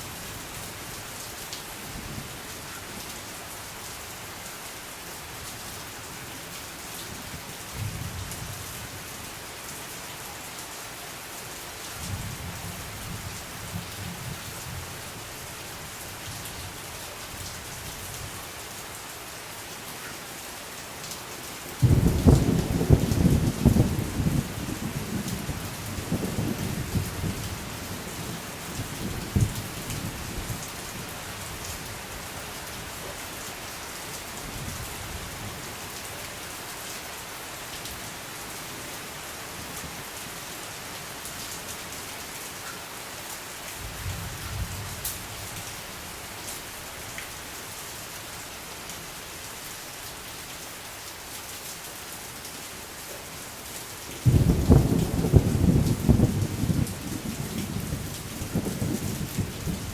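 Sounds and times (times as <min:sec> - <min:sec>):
steady rain: 0:00.0 - 0:59.9
loud thunderclap: 0:54.2 - 0:57.9
distant thunder rumbling: 0:54.2 - 0:59.9.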